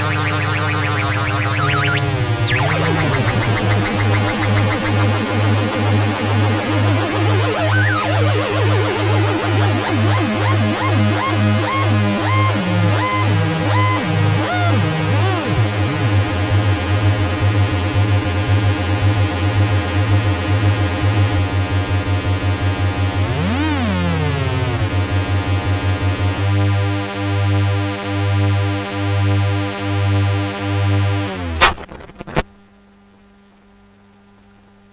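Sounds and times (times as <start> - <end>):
chirping pitch glides: 0.0 - 16.6, 23.2 - 25.4
buzzing synth tones: 0.0 - 27.8, 28.4 - 32.5
synthesizer low pulsing drone: 0.0 - 31.6.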